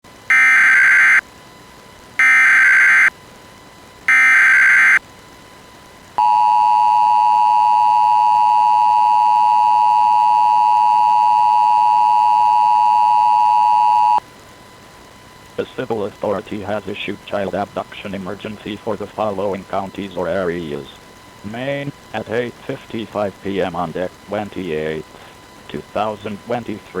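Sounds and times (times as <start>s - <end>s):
harsh digital data squawks: 0.3s - 1.2s, 2.2s - 3.1s, 4.1s - 5.0s
two-tone attention signal: 0.3s - 1.2s, 4.1s - 5.0s.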